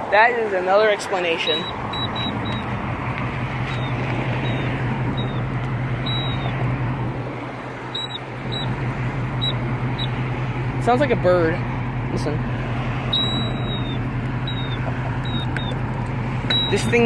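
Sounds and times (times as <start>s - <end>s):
street traffic noise: 0.0s - 17.0s
constant low hum: 0.9s - 17.0s
short high chirps: 6.0s - 6.5s, 13.1s - 15.8s, 16.5s - 16.8s.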